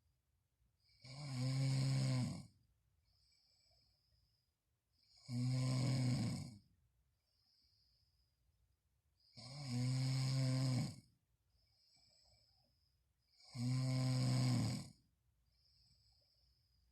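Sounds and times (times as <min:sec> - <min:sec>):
person snoring loudly: 0:00.9 - 0:02.6, 0:05.0 - 0:06.6, 0:09.3 - 0:11.1, 0:13.3 - 0:15.0
faint breath: 0:03.0 - 0:04.6, 0:07.2 - 0:08.6, 0:11.4 - 0:13.1, 0:15.4 - 0:16.9.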